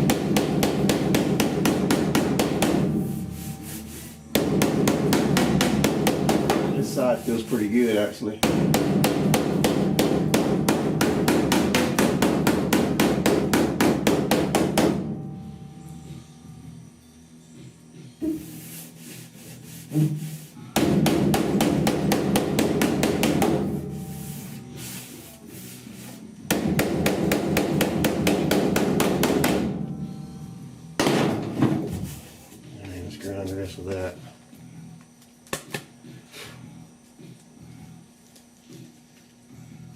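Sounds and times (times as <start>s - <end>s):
body hammer tapping sheet steel: 0.0s - 15.5s, 19.9s - 25.2s, 26.4s - 30.2s, 31.0s - 31.8s.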